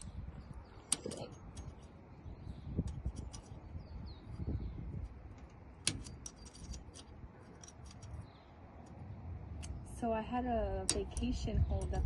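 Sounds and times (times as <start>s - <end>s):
lockpicking tools clicking in lock: 5.8s - 8.2s.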